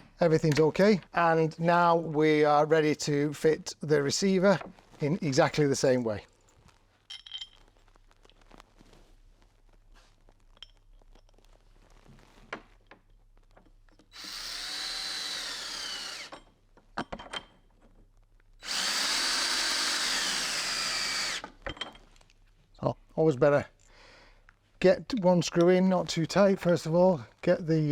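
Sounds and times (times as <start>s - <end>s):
power drill running: 14.1s - 16.4s, 18.6s - 21.5s.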